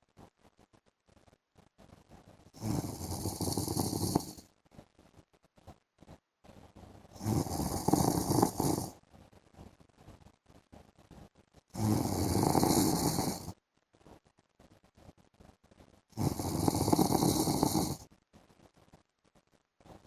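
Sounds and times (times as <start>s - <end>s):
man snoring: 2.6s - 4.4s, 7.2s - 8.9s, 11.8s - 13.5s, 16.2s - 18.0s.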